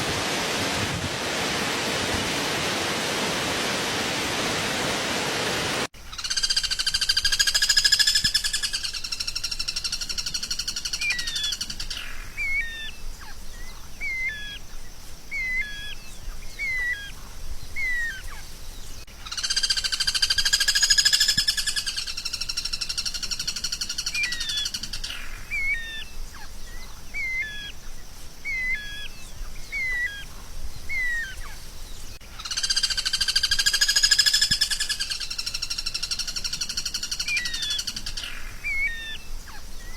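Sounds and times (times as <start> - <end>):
rushing noise: 0.0 - 5.9
recorded songbird song: 5.9 - 39.9.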